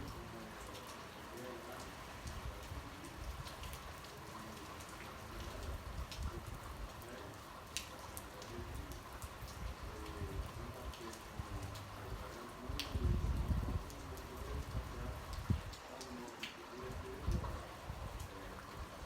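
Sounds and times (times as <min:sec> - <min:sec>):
rain falling: 0:00.0 - 0:19.0.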